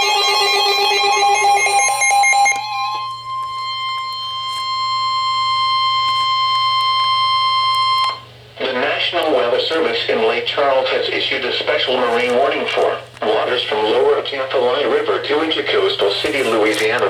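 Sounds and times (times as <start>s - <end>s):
pulsing multi-pitched electronic tone: 0.0s - 8.2s
steady electronic alarm tone: 0.0s - 8.4s.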